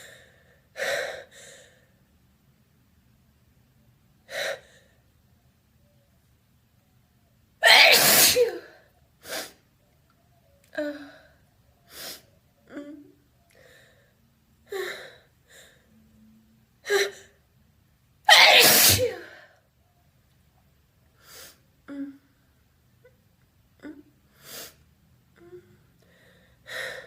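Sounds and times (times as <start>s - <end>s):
loud sneeze: 7.6s - 8.7s, 18.3s - 19.4s.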